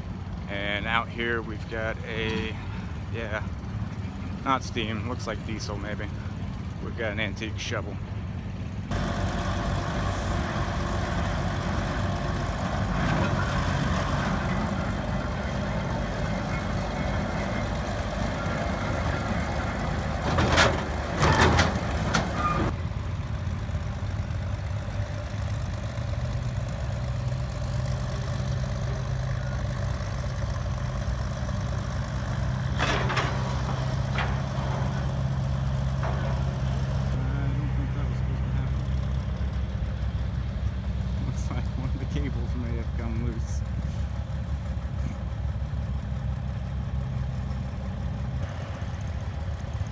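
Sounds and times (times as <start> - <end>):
power shovel engine running: 0.0 - 49.9
loud metallic clanks: 8.9 - 22.7, 32.5 - 37.2.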